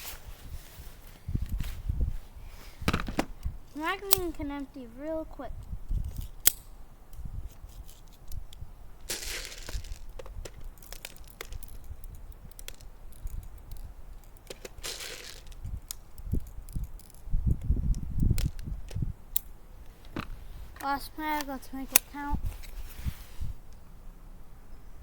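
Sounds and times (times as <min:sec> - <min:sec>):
pistol handling clicks and rustles: 0:04.1 - 0:04.4, 0:05.6 - 0:20.8, 0:21.4 - 0:22.8.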